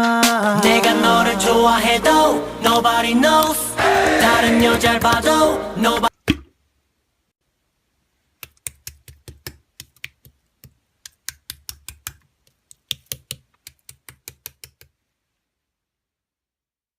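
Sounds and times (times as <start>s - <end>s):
typing on a keyboard: 8.4s - 14.9s.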